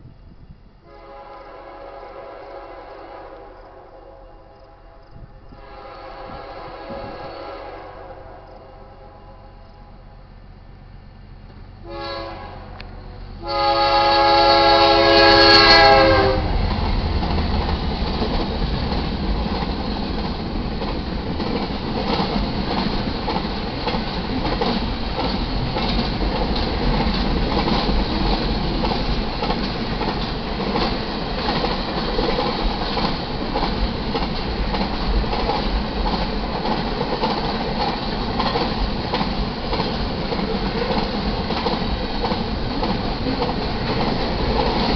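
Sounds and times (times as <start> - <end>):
train horn blast: 0.8 - 9.9, 11.8 - 16.6
train wheels rumbling on rails: 5.0 - 44.9.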